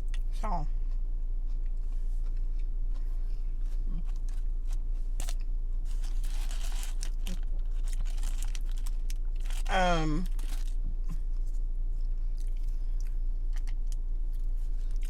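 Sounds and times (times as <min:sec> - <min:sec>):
low hum: 0:00.0 - 0:15.0
person eating: 0:01.5 - 0:15.0
wrapper crinkling: 0:05.2 - 0:10.8.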